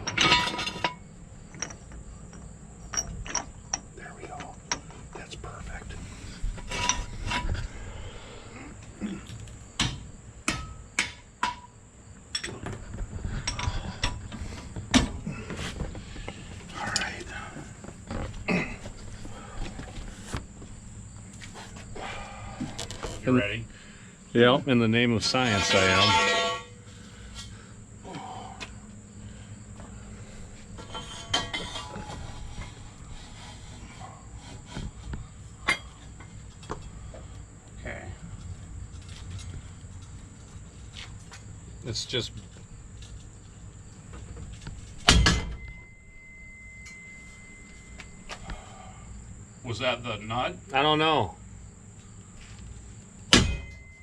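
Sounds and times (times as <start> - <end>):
metal breaker bar clanking: 25.3 - 26.8, 53.3 - 54.0
steel tools clinking: 25.3 - 26.9.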